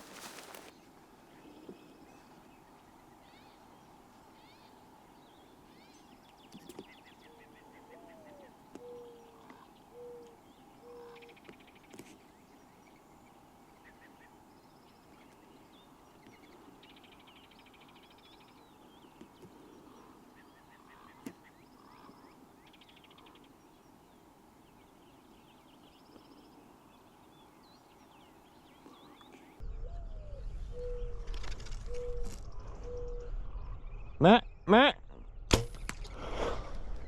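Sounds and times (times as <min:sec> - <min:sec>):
small birds chirping and trilling: 0:00.0 - 0:35.4
dove cooing: 0:07.9 - 0:11.2.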